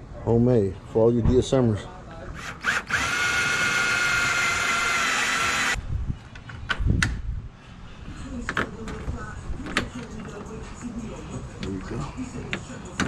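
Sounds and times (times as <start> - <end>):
electric drill whining: 2.4 - 5.8.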